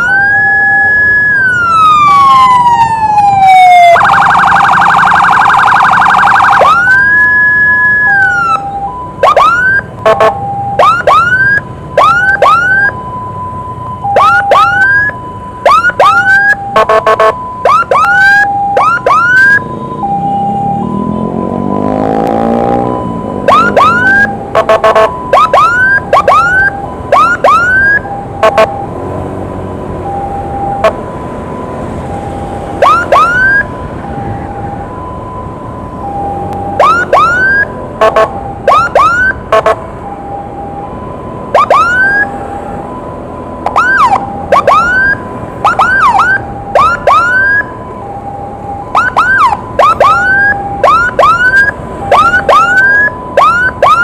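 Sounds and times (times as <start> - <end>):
rising siren whoops: 0.0 - 29.0, 29.6 - 54.0
two-tone hi-lo siren: 0.0 - 54.0.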